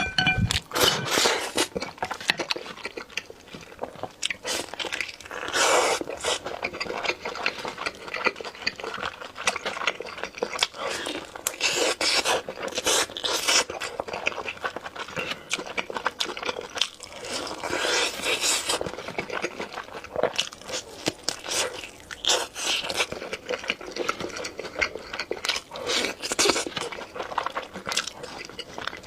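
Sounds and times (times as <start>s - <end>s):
crunchy food chewing: 0.5s - 29.0s.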